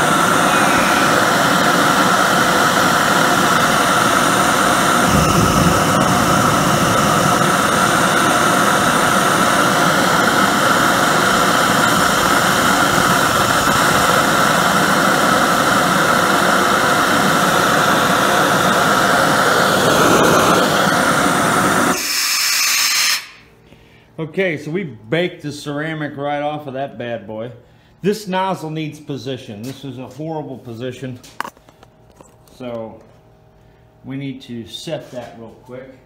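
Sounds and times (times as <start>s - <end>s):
forge burner roaring: 0.0s - 23.6s.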